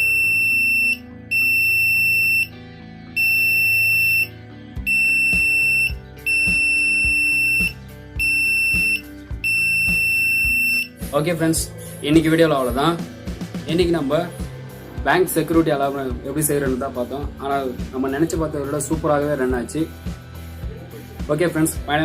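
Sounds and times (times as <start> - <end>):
high-pitched alarm beeps: 0.0 - 2.5, 3.2 - 11.0.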